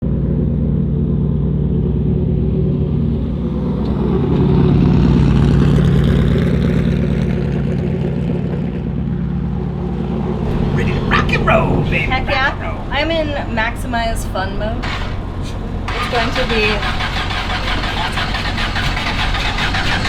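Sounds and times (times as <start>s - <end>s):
large vehicle engine running: 10.5s - 20.0s.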